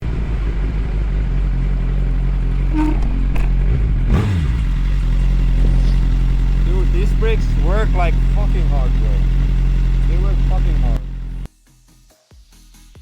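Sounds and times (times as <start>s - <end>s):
engine idling: 0.0s - 11.5s
falling engine note: 2.6s - 11.5s.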